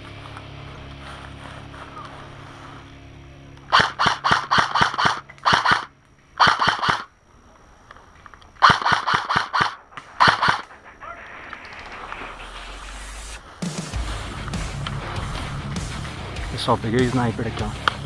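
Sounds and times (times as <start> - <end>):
airsoft rifle rapid shots: 3.7 - 7.1, 8.6 - 14.0.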